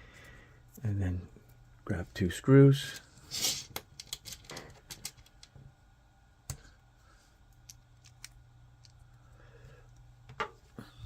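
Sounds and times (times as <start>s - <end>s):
small plastic parts clicking: 3.8s - 5.5s, 7.5s - 9.1s.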